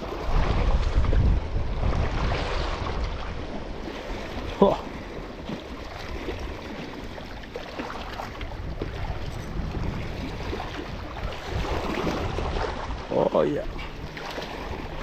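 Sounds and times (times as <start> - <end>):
sea water washing at shore: 0.0 - 15.0
wind rumbling on microphone: 0.0 - 15.0.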